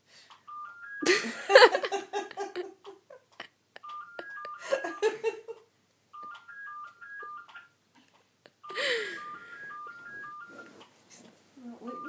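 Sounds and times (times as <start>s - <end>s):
electronic toy beeping tune: 0.5s - 1.3s, 3.8s - 5.2s, 6.1s - 7.8s, 8.6s - 10.8s, 11.6s - 12.0s.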